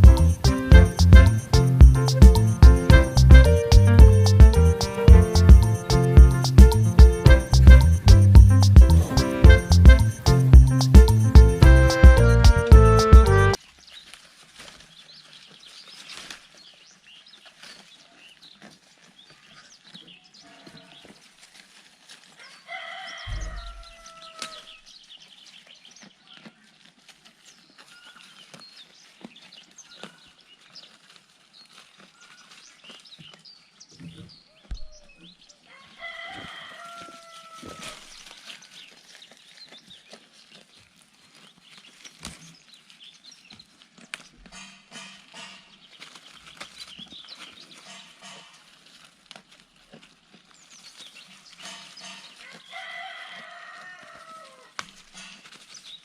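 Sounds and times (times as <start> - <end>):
rooster crowing: 22.4 - 24.6, 35.7 - 38.0, 52.6 - 54.7.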